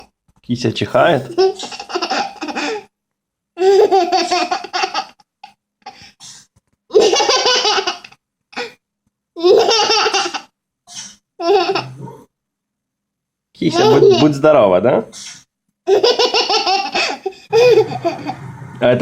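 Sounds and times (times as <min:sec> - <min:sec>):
young child laughing: 0:13.7 - 0:14.3, 0:15.9 - 0:18.4.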